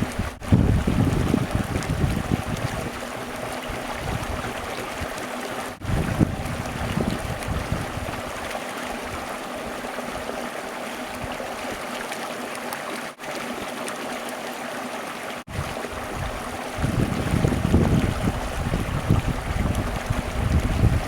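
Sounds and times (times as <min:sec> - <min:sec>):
wind buffeting microphone: 0:00.0 - 0:10.4, 0:15.5 - 0:21.0
stream water rushing: 0:00.0 - 0:21.0.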